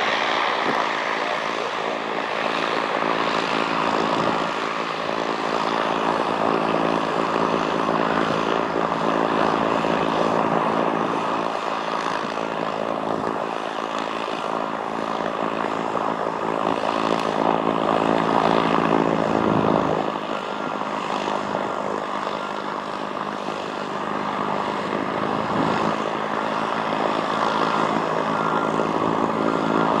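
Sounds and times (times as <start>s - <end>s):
propeller plane engine droning: 0.0s - 30.0s.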